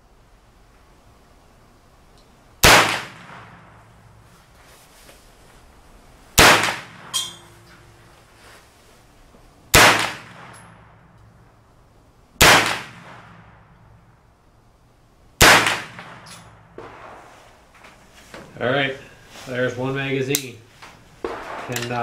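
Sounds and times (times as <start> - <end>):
rifle gunshots with echo: 2.6 - 4.2, 6.4 - 7.2, 9.7 - 11.2, 12.4 - 14.0, 15.4 - 17.5, 21.2 - 22.0
metallic clink: 7.1 - 8.0, 16.2 - 16.6.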